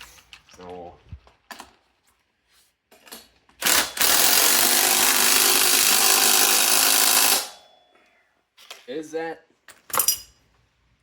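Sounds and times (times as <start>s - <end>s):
impact wrench hammering: 3.6s - 7.8s.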